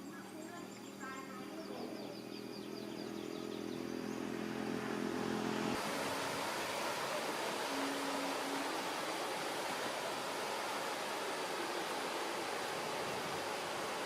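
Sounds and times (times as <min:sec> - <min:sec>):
motorbike engine humming: 0:00.0 - 0:05.8
steady rushing noise: 0:04.2 - 0:14.0.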